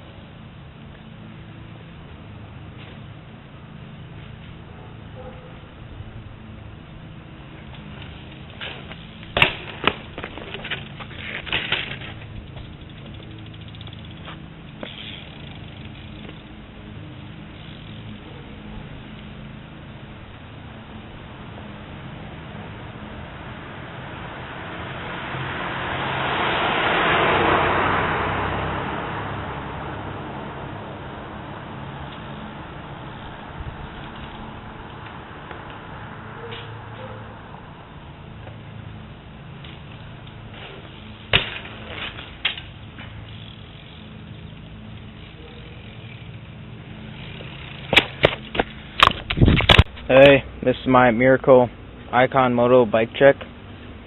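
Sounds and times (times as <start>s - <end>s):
car passing by: 21.9s - 37.9s.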